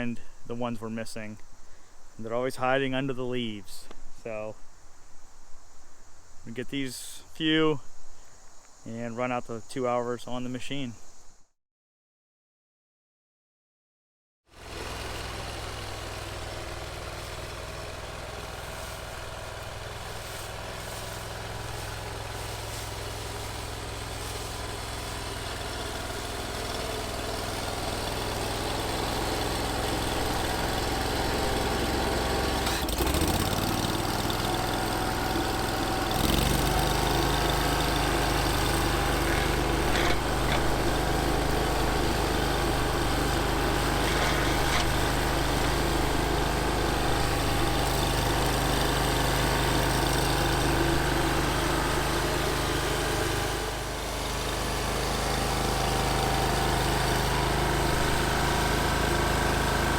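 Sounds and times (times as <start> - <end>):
stump grinder engine running: 14.5 - 59.9.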